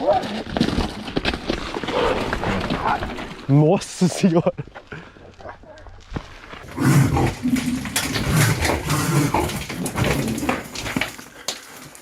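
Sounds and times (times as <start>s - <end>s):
animal rough vocal bursts: 6.6s - 10.6s.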